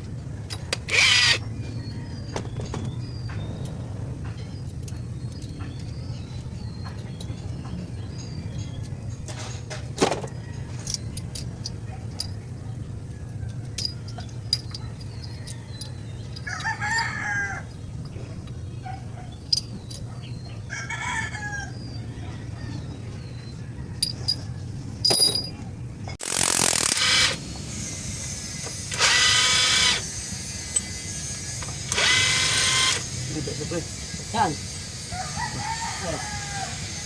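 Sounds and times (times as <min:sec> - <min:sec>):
rooster crowing: 0:16.4 - 0:17.8, 0:20.7 - 0:24.0, 0:35.0 - 0:37.0.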